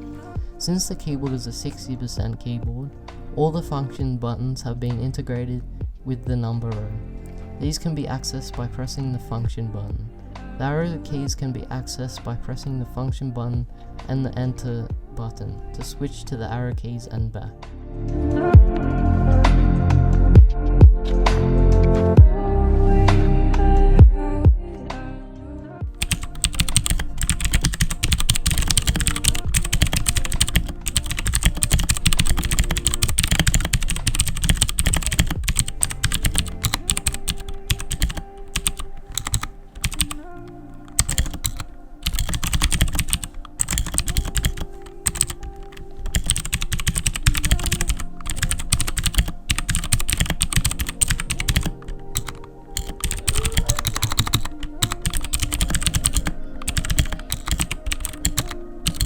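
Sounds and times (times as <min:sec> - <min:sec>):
quiet music: 0:00.0 - 0:59.0
mechanical keyboard typing: 0:26.0 - 0:59.0.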